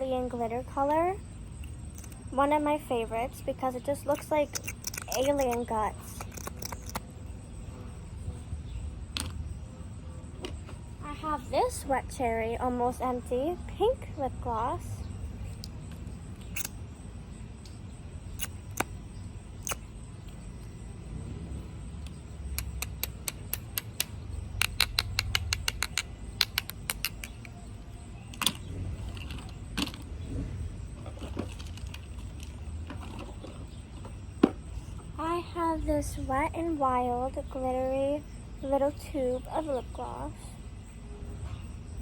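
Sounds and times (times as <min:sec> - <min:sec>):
plastic tubes clicking and clattering: 0:04.5 - 0:05.6, 0:22.6 - 0:27.5, 0:28.3 - 0:30.1.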